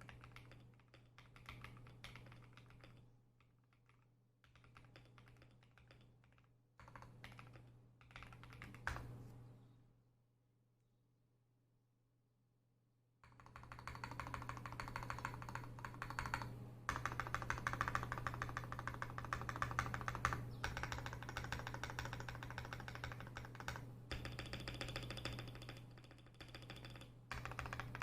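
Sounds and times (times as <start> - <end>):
fast mechanical keyboard typing: 0.0 - 3.0, 3.8 - 9.1, 13.2 - 28.0.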